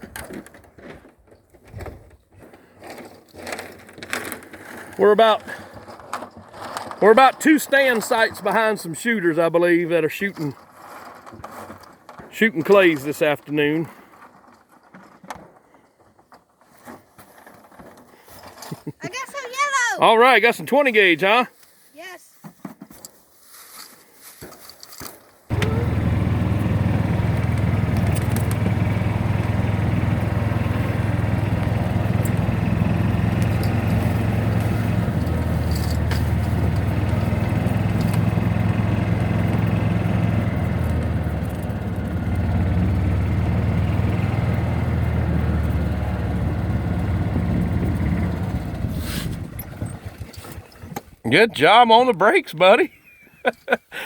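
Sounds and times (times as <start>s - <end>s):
vehicle engine running: 25.5s - 50.0s.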